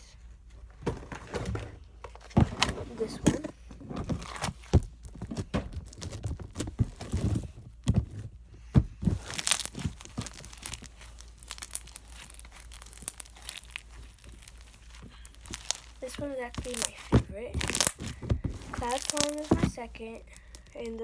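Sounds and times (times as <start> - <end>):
slime squishing and crackling: 8.6 - 21.0.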